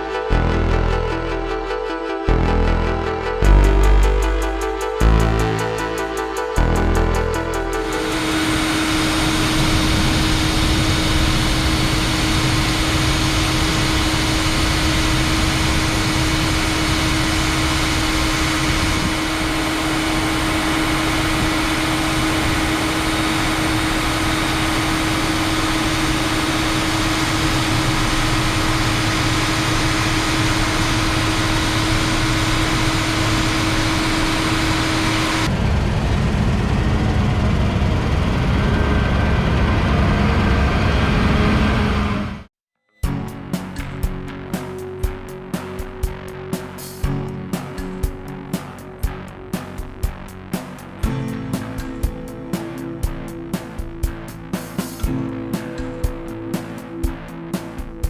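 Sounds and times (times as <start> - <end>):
combine harvester drone: 0.0 - 42.5
lower engine sound: 0.0 - 42.5.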